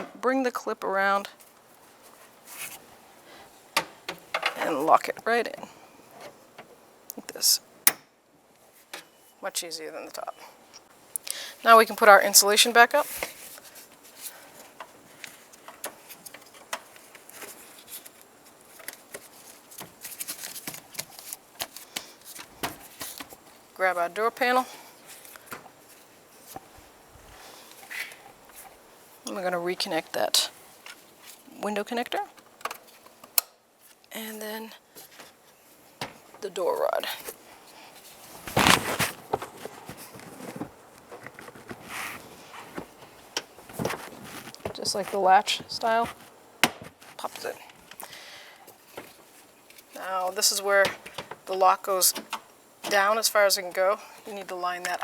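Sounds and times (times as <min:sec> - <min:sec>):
insulation sheet clicks and rustles: 0:13.1 - 0:23.6, 0:38.3 - 0:48.1
plastic door panel rustling scrape: 0:38.2 - 0:47.2.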